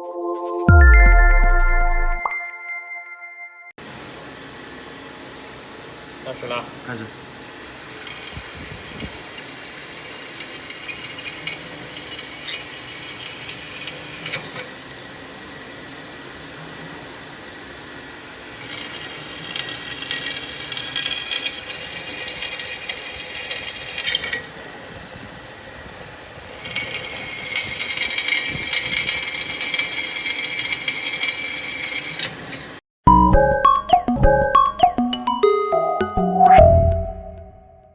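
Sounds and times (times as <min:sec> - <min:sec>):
power drill cutting metal: 0:08.0 - 0:14.7, 0:18.6 - 0:24.6, 0:26.4 - 0:32.8.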